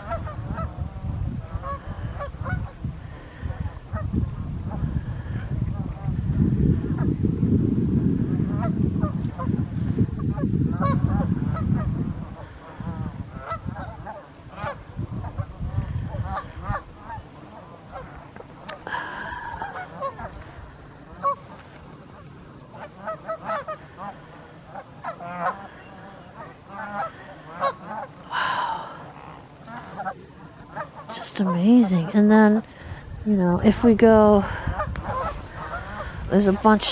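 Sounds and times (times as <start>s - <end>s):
geese honking: 0.0s - 4.0s, 10.2s - 33.0s, 34.4s - 36.9s.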